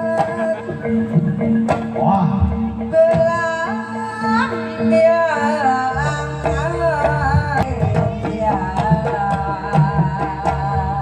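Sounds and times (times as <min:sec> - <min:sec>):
pitch-bending melodic line: 0:00.0 - 0:07.5
gamelan music: 0:00.0 - 0:11.0.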